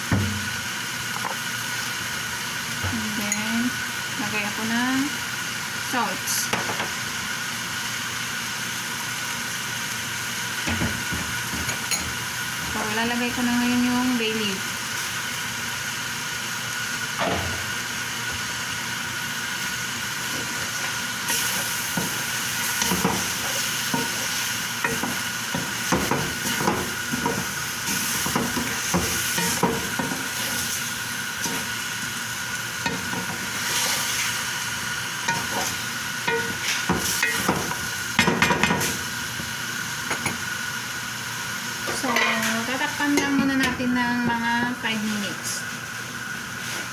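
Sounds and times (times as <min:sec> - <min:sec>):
chicken sizzling in a pot: 0:00.0 - 0:46.9
spoon scraping and knocking a pot: 0:35.3 - 0:38.9.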